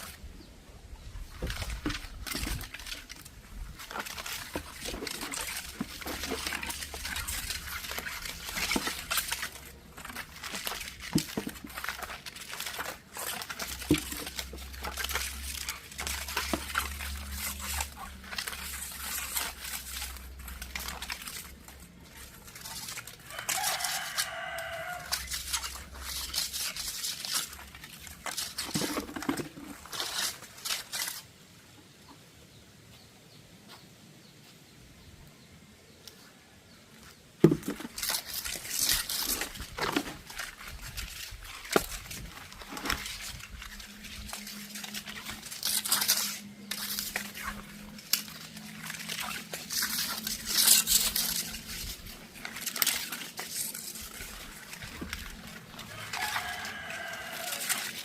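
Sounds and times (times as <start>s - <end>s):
scraping and rustling: 0.0s - 31.4s, 36.1s - 58.0s
rooster crowing: 23.2s - 25.3s, 55.9s - 58.0s.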